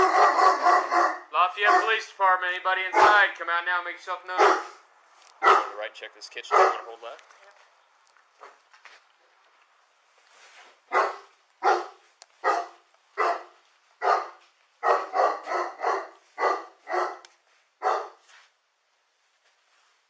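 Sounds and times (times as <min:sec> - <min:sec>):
dog barking: 0:00.0 - 0:02.1, 0:02.9 - 0:03.3, 0:04.4 - 0:04.8, 0:05.4 - 0:05.8, 0:06.4 - 0:07.0, 0:10.9 - 0:18.2.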